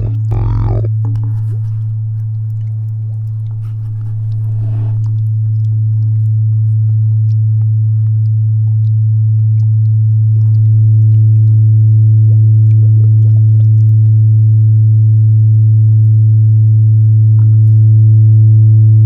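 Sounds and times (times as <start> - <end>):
low drone tone: 0.0 - 6.6.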